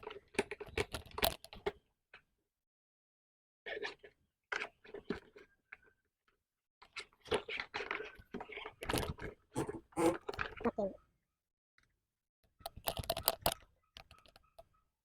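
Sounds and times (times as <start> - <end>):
plastic parts clicking and rattling: 0.0 - 1.7, 7.3 - 10.6, 12.6 - 14.7.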